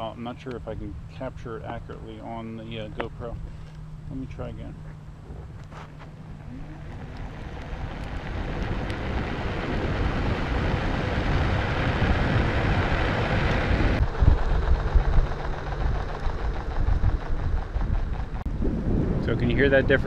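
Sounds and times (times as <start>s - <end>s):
skateboard rolling on pavement: 4.9s - 18.4s.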